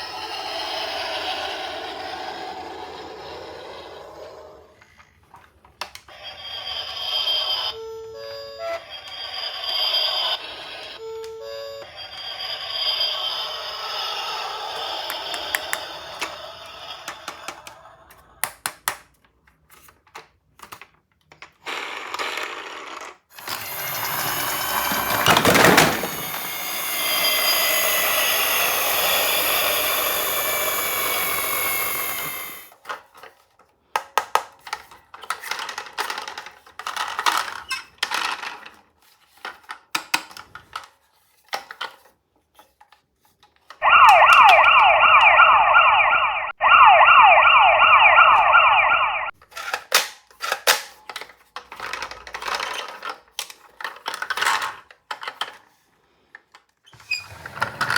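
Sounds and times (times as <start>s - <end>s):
toy electronic siren: 0.0s - 4.0s, 6.1s - 18.1s, 23.4s - 32.7s, 43.8s - 49.4s
toy motor whirring: 0.0s - 18.5s, 21.6s - 33.4s, 34.6s - 42.0s, 49.4s - 55.7s
plastic toy clicks and clatters: 11.8s - 43.8s, 49.4s - 56.8s.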